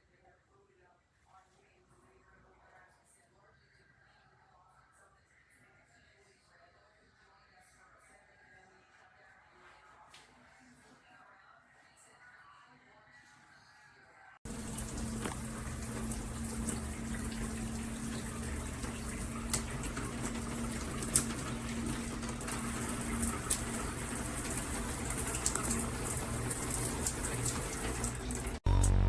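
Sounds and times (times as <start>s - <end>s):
shower water spraying: 14.5s - 28.6s.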